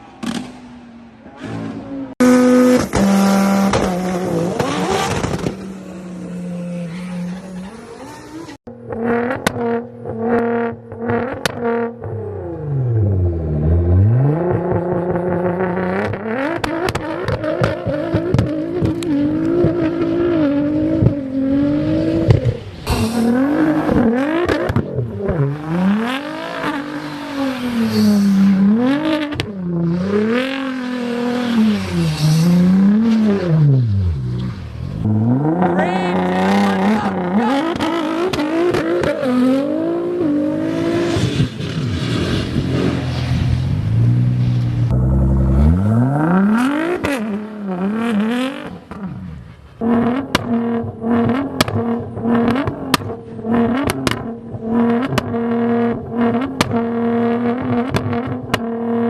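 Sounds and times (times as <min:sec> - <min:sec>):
car engine revving: 0:01.4 - 0:59.0
exhaust pops and crackles: 0:16.0 - 0:19.8, 0:23.8 - 0:25.5, 0:50.1 - 0:50.6, 0:51.2 - 0:55.4, 0:56.0 - 0:58.7.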